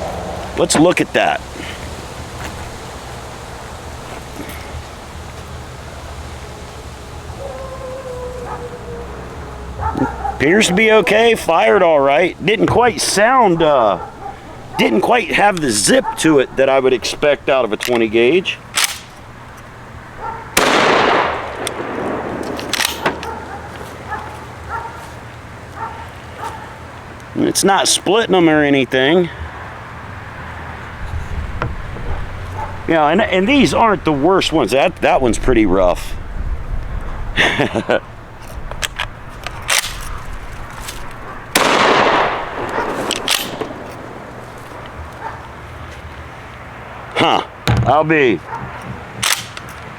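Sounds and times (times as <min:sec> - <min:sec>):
dog barking: 0:07.3 - 0:11.9, 0:13.4 - 0:16.7, 0:20.2 - 0:20.6, 0:23.1 - 0:25.2, 0:25.8 - 0:26.8, 0:32.0 - 0:32.9, 0:42.4 - 0:43.1, 0:45.1 - 0:45.6, 0:48.4 - 0:48.8
shotgun pump action clacks: 0:18.8 - 0:19.1, 0:20.6 - 0:23.4, 0:41.6 - 0:43.8, 0:49.2 - 0:49.7
shotgun blast: 0:20.6 - 0:23.2, 0:41.5 - 0:43.8.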